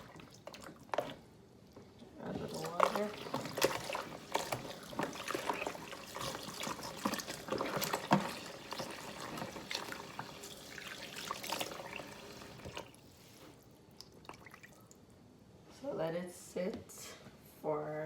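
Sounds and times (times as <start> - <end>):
water splashing and sloshing: 0.0 - 15.1.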